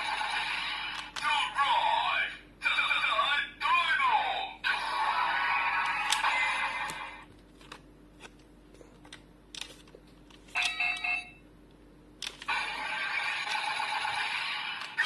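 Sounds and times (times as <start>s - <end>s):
toy electronic sound effect: 12.5s - 15.0s.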